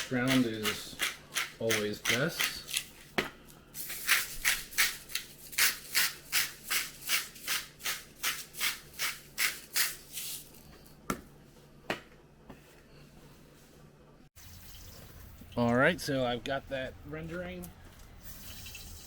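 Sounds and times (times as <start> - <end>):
pepper mill grinding: 0.0 - 3.0, 3.8 - 10.7.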